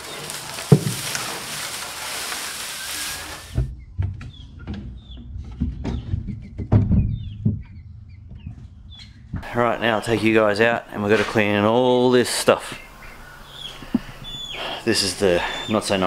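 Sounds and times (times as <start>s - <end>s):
dry hay rustling: 0.0s - 3.7s
knocks and thumps: 0.6s - 1.3s, 3.5s - 9.5s
chicks peeping: 2.5s - 16.0s.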